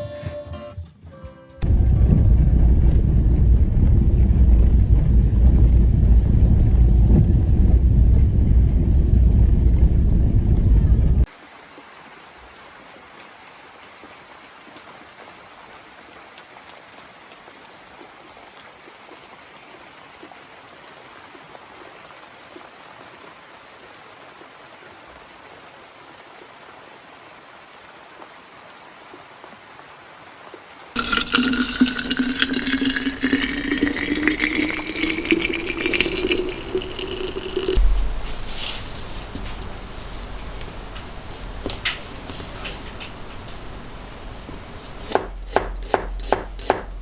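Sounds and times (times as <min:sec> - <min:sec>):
water pouring into container: 0:31.0 - 0:41.8
faint background hiss: 0:31.0 - 0:45.2.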